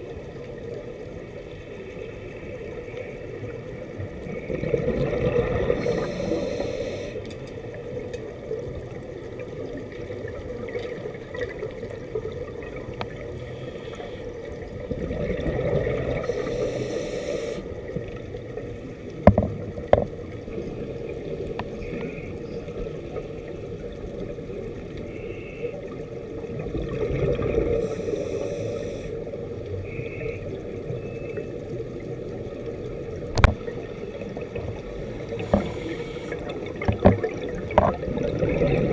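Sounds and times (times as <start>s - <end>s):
exhaled bubbles gurgling: 0.0s - 38.9s
diver breathing through regulator: 5.6s - 7.2s, 16.1s - 17.7s, 27.6s - 29.2s, 34.8s - 36.6s.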